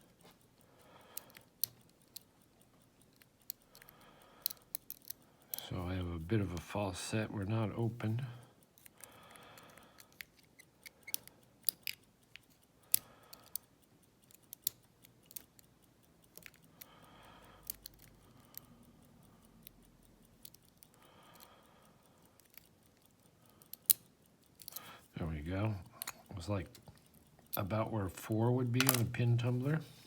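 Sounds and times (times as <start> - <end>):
lock pick clicking in a lock: 1.1 - 5.6, 8.6 - 18.7, 19.6 - 21.6, 22.2 - 24.9, 28.7 - 29.2.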